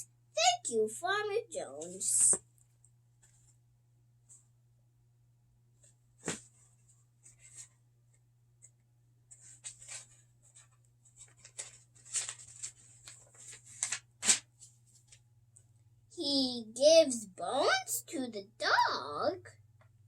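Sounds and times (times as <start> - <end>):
faint steady hum: 0.0 - 20.0
book pages rustling: 6.2 - 7.7, 8.6 - 15.3.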